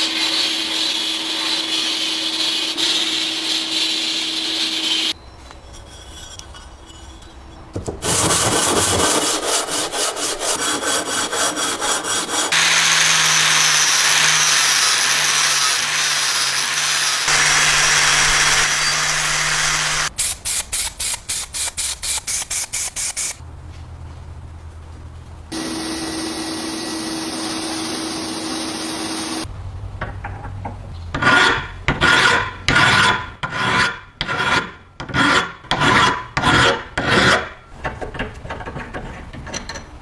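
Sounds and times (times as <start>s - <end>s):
file scraping strokes: 0.0s - 7.4s, 8.0s - 23.4s, 31.2s - 37.6s
power tool grinding: 7.4s - 23.4s.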